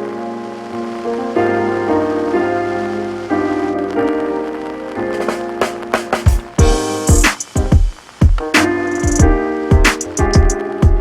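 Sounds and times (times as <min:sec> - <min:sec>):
keyboard chords: 0:00.0 - 0:11.0
bass drum and cymbal hits: 0:06.2 - 0:11.0.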